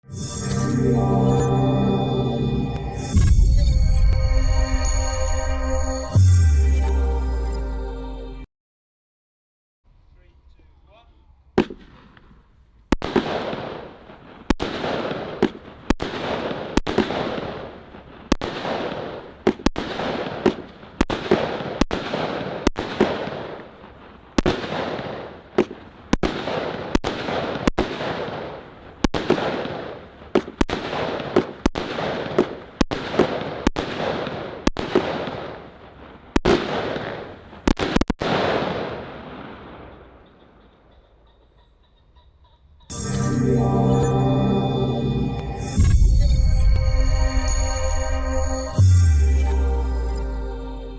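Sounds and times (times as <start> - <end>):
firework bangs with hiss: 11.6 - 40.0.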